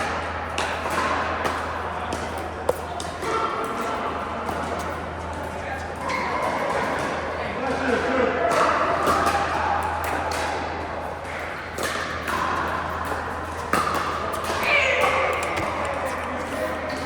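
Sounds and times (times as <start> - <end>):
ball bouncing on hard court: 0.9 - 3.4, 13.0 - 17.0
paddles striking plastic ball: 2.7 - 3.1, 13.9 - 16.6.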